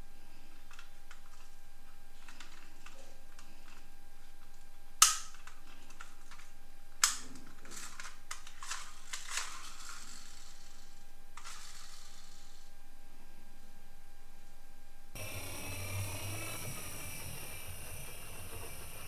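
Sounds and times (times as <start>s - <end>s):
toy cars clicking: 5.0s - 12.6s.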